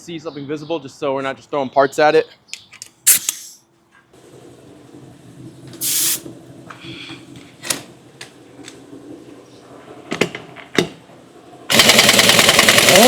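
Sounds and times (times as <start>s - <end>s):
clicks and knocks of tools: 2.5s - 3.6s
short hiss: 3.0s - 3.6s, 5.8s - 6.3s.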